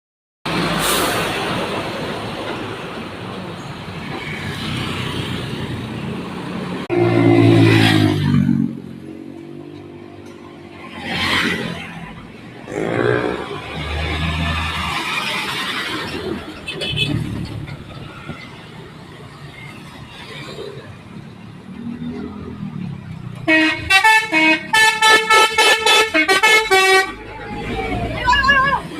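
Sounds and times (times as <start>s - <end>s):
traffic rushing by: 0.5s - 28.9s
bus horn playing a tune: 6.9s - 8.0s, 23.4s - 27.3s.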